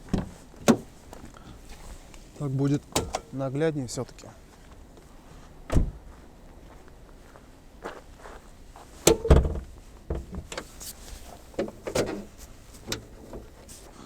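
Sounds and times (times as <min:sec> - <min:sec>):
car panels and latches clunking: 0:00.0 - 0:00.9, 0:02.8 - 0:03.3, 0:09.0 - 0:13.8.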